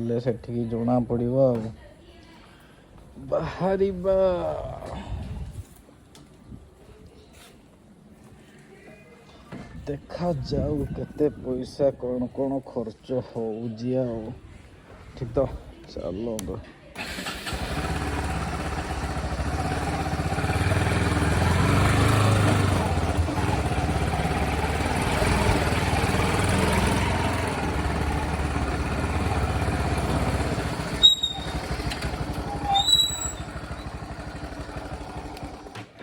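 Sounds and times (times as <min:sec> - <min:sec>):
motorcycle engine running: 0:17.0 - 0:35.8
short high squeaks: 0:30.8 - 0:34.0.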